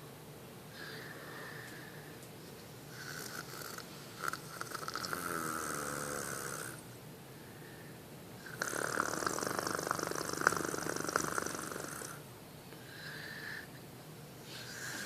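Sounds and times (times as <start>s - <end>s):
person snoring: 3.0s - 6.8s, 8.4s - 12.2s, 14.5s - 15.0s.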